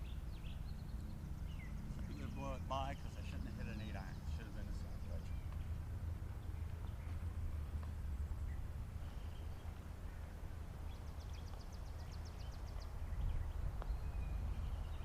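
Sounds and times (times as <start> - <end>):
songbird trilling: 0.0 - 5.8
wind rumbling on microphone: 0.0 - 15.0.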